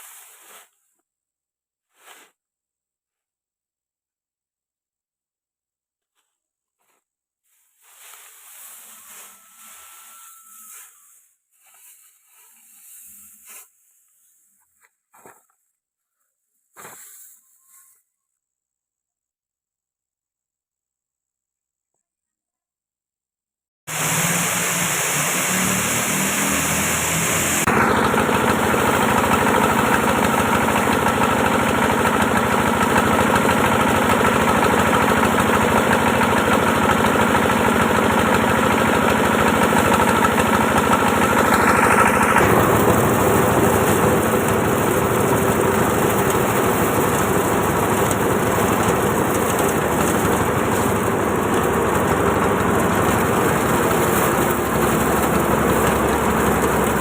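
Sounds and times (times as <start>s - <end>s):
engine running: 23.9s - 57.0s.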